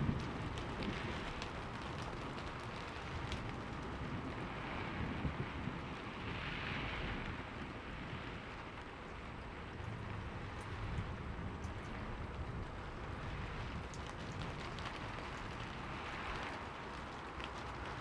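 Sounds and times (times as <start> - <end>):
low thunder rumble: 0.0 - 6.1
rain falling: 0.0 - 18.0.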